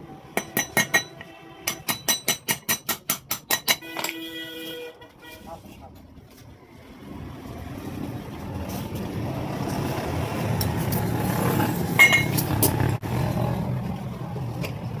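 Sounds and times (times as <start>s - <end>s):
motor vehicle rumble: 5.8s - 15.0s
sharp clink: 12.0s - 12.5s.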